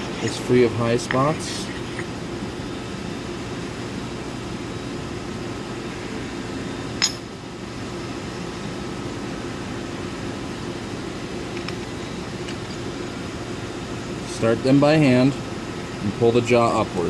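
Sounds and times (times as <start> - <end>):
low shop hum: 0.0 - 17.0
metallic clink of vise parts: 7.0 - 7.3.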